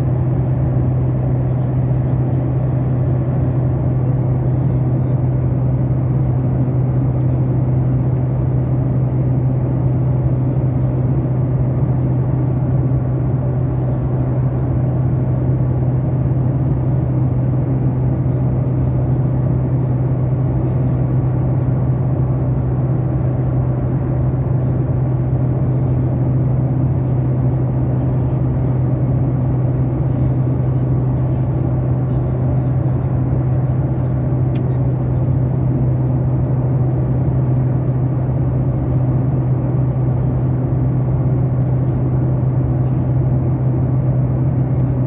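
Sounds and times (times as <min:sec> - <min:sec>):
airliner cabin engine drone: 0:00.0 - 0:45.0.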